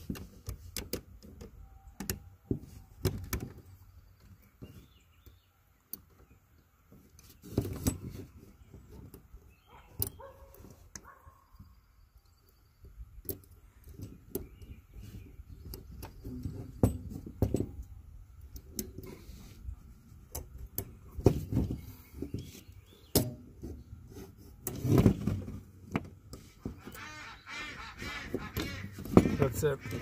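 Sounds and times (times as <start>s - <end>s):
loud thumps: 28.0s - 30.0s.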